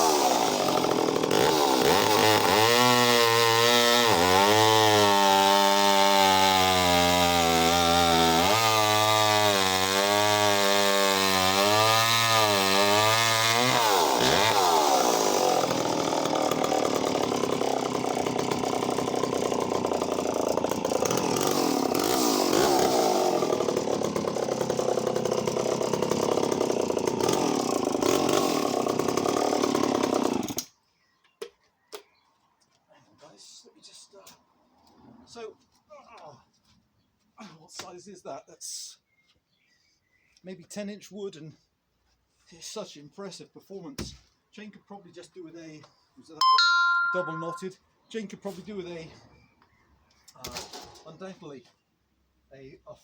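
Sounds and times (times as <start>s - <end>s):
chainsaw cutting log: 0.0s - 30.7s.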